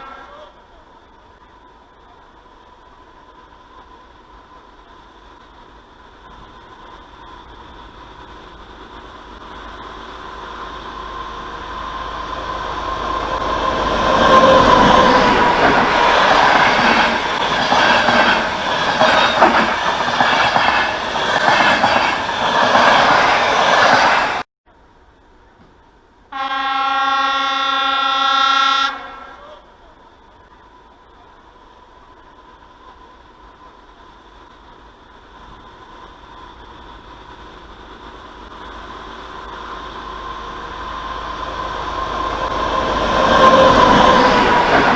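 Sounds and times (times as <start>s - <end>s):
train rumbling past: 0.0s - 44.9s
train horn blast: 26.3s - 29.6s.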